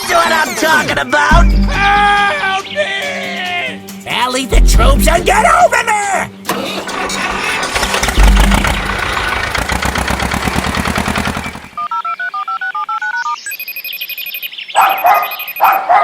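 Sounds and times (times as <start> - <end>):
fast cartoon rattling: 6.5 - 11.8
electronic phone tones: 11.8 - 15.9
telephone keypad beeps: 11.8 - 16.0.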